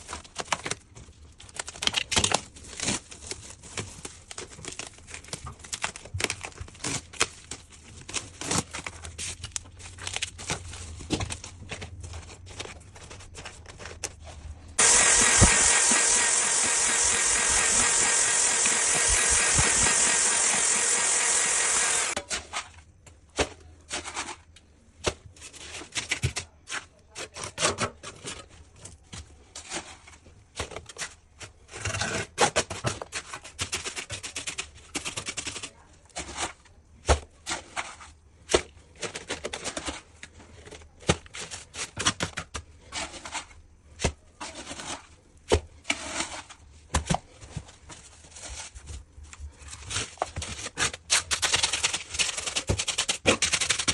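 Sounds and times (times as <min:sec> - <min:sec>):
power tool running: 0:14.8 - 0:22.2.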